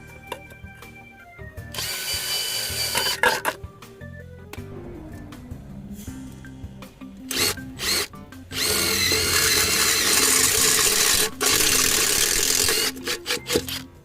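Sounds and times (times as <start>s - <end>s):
electric drill boring into metal: 1.7s - 3.4s, 7.3s - 13.9s.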